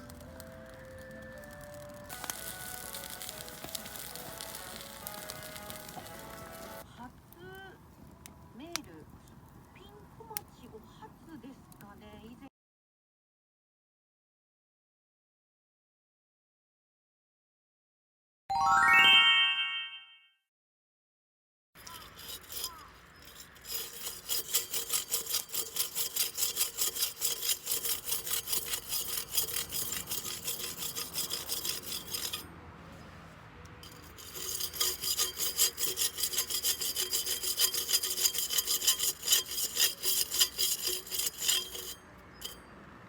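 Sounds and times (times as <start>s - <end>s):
hand saw cutting wood: 21.8s - 32.5s, 33.8s - 42.6s.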